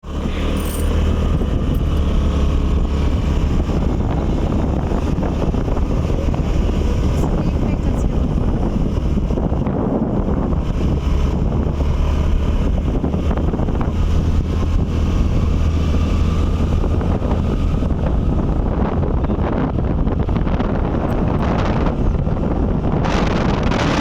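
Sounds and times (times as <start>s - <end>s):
wind buffeting microphone: 0.1s - 24.0s.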